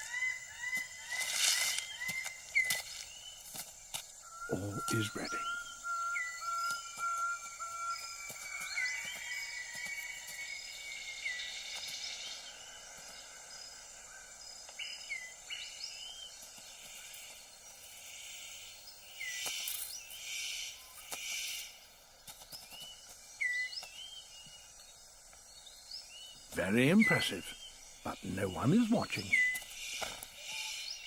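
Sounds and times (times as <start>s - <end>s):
whistled bird calls: 0.0s - 3.4s, 4.2s - 17.2s, 18.1s - 21.8s, 22.6s - 24.9s, 25.5s - 31.0s
high insect drone: 0.0s - 31.0s.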